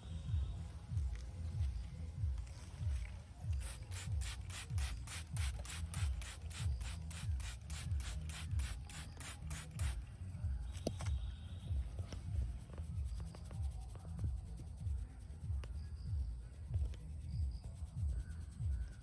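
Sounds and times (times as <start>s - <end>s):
low regular thumping: 0.0s - 19.0s
hands rubbing hair and scalp: 1.0s - 11.2s.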